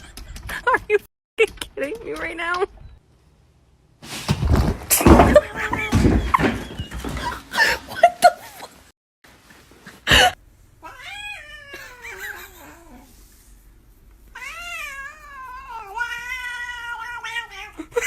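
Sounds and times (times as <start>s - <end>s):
cat meowing in yowls: 10.8s - 12.9s, 14.4s - 17.8s.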